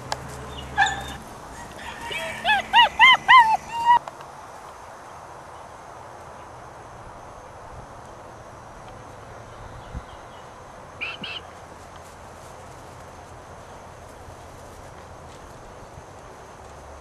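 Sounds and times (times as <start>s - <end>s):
steady background hiss: 0.0s - 17.0s
puppy yipping: 0.5s - 4.0s.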